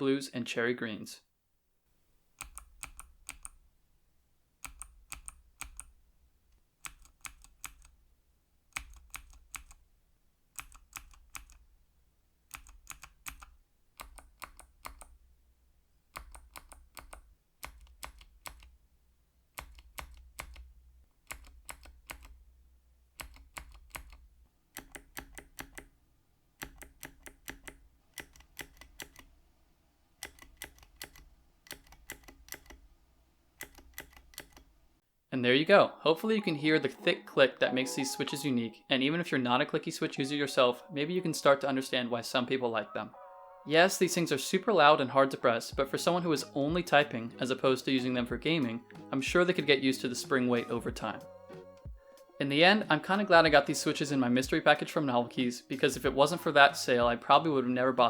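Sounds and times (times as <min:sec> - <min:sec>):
mechanical keyboard switches clicking: 0:30.2 - 0:32.8, 0:33.6 - 0:34.7.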